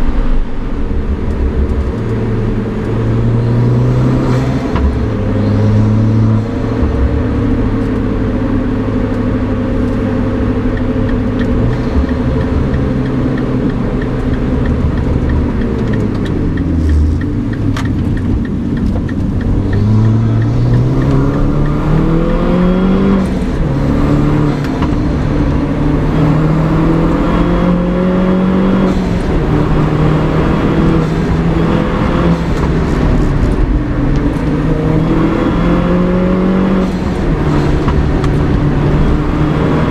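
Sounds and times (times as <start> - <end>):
car engine under load: 0.0 - 39.9.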